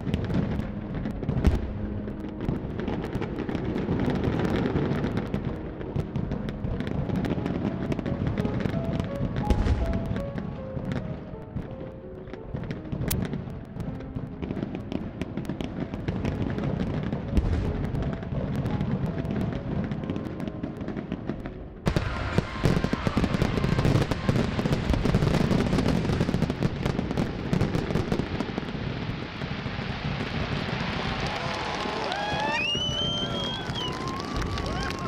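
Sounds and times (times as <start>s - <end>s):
fireworks bangs and crackle: 0.0s - 35.0s.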